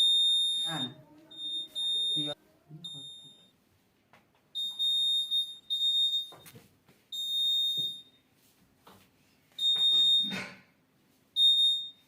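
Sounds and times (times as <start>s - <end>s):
alarm buzzer beeping: 0.0s - 3.5s, 4.6s - 6.5s, 7.2s - 8.1s, 9.6s - 10.4s, 11.4s - 12.0s.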